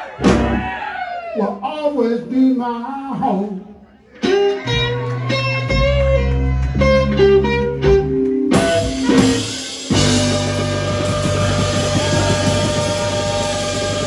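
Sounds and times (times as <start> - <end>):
drums: 0.0 - 1.3, 4.2 - 14.0
bass: 0.0 - 14.0
electric guitar lead lines: 4.2 - 14.0.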